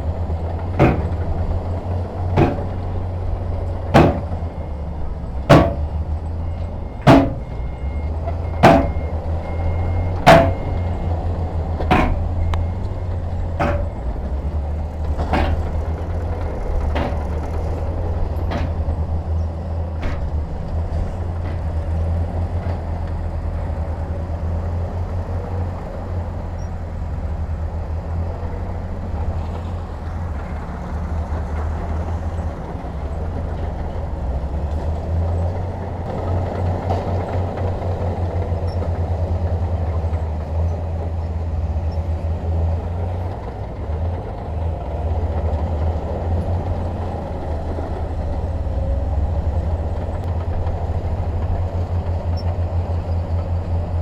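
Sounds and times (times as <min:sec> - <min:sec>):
heavy diesel engine running: 0:00.0 - 0:54.0
sharp knocks: 0:00.6 - 0:01.5, 0:02.2 - 0:03.1, 0:03.9 - 0:04.6, 0:05.4 - 0:06.0, 0:07.0 - 0:07.7, 0:08.3 - 0:09.2, 0:10.2 - 0:11.0, 0:11.8 - 0:12.6, 0:13.6 - 0:14.1, 0:15.2 - 0:16.2, 0:16.8 - 0:17.4, 0:18.5 - 0:18.9, 0:20.0 - 0:20.4.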